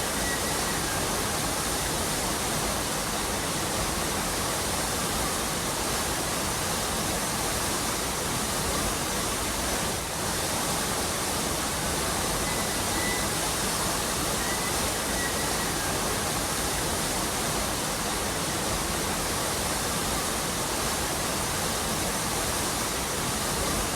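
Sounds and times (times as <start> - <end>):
waterfall rushing: 0.0 - 23.9.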